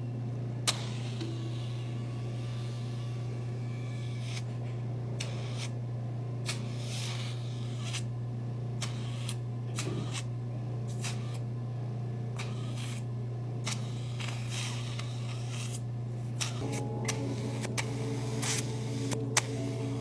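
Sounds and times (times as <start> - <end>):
vacuum pump humming: 15.9 - 20.0.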